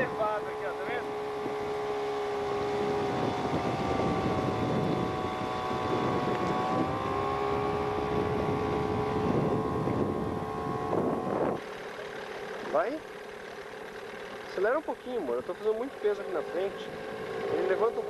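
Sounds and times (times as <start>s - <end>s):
outboard motor running: 0.0s - 18.0s
wind: 0.0s - 18.0s.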